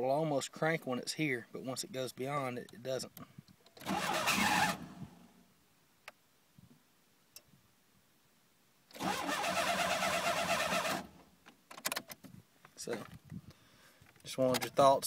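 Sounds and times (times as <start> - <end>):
car engine cranking: 3.8 - 5.0, 8.9 - 11.2.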